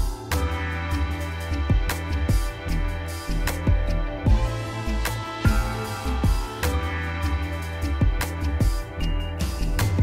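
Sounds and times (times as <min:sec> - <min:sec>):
bass drum hits: 0:03.8 - 0:06.7.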